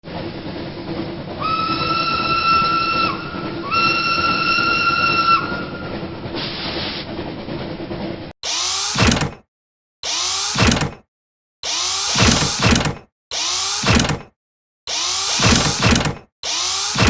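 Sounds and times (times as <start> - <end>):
train running: 0.0 - 9.3
train whistle blasts: 1.4 - 5.9.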